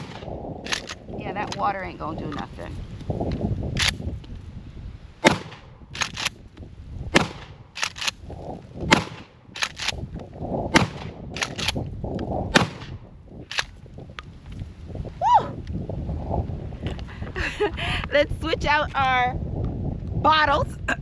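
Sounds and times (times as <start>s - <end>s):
shotgun pump racking clacks: 0.7s - 1.6s, 3.8s - 4.0s, 6.0s - 6.4s, 7.8s - 8.2s, 9.6s - 10.0s, 11.4s - 11.8s, 13.5s - 13.8s
shotgun shots: 5.2s - 6.3s, 7.1s - 8.2s, 8.9s - 10.0s, 10.7s - 11.8s, 12.5s - 13.7s.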